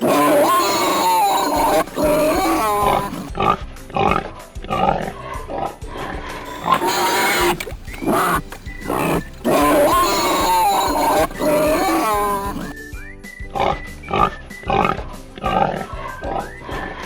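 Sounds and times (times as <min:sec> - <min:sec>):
pig squealing: 0:00.0 - 0:03.3, 0:06.5 - 0:12.8.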